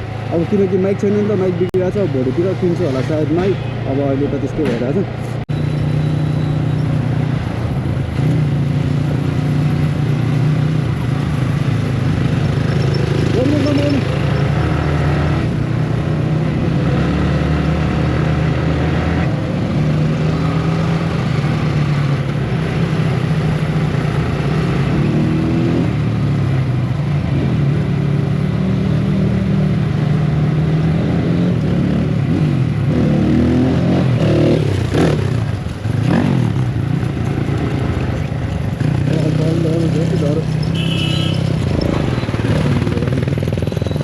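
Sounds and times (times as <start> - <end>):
motorcycle engine running: 34.1 - 44.0.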